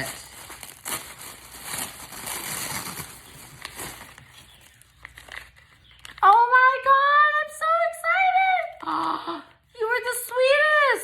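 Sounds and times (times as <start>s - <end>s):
packaging rustling and crinkling: 0.0s - 6.3s.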